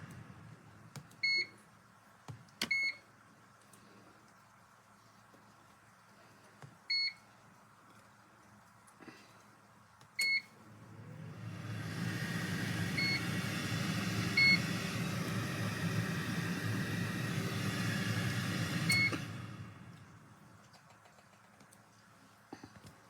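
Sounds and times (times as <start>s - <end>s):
air fryer fan whirring: 0.0s - 1.5s, 10.2s - 20.6s.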